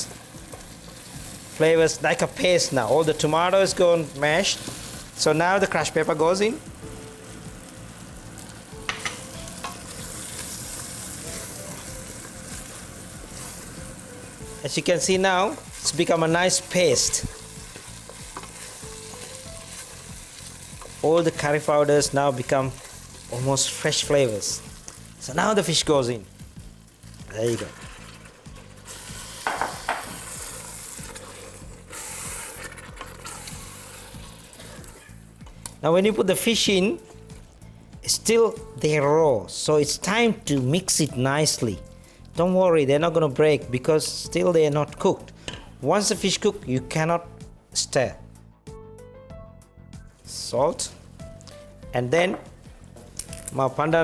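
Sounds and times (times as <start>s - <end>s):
spice paste sizzling in oil: 0.0s - 39.0s.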